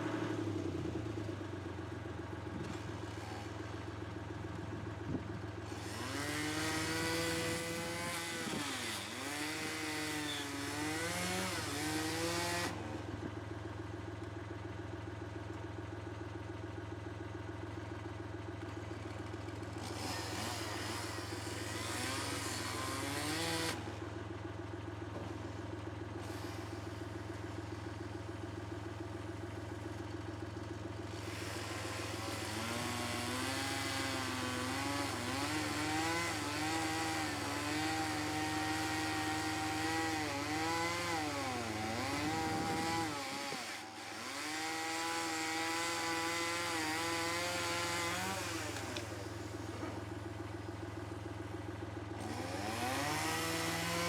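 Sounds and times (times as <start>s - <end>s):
engine running: 0.0s - 54.0s.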